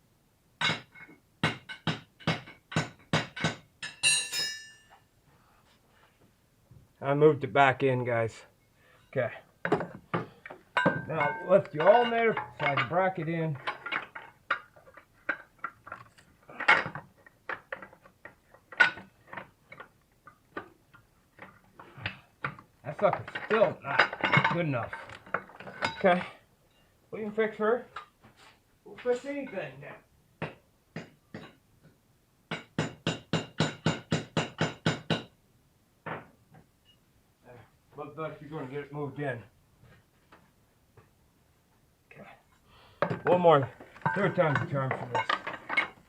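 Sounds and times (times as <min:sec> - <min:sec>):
hammer striking metal: 0:00.6 - 0:04.9
metal clinks and knocks: 0:00.6 - 0:05.1, 0:09.6 - 0:21.6, 0:22.4 - 0:26.9, 0:43.0 - 0:46.0.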